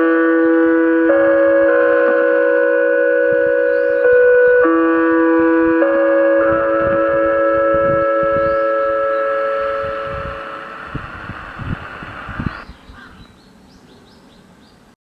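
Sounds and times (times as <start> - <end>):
chime chord over loudspeakers: 0.0 - 10.9
faint bird chirps: 12.4 - 14.8.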